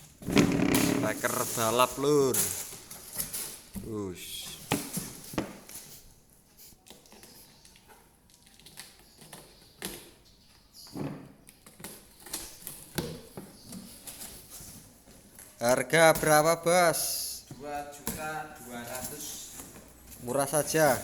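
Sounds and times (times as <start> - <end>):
packaging rustling and scraping: 0.0 - 16.4, 17.5 - 21.0
loud bumps: 0.2 - 1.9.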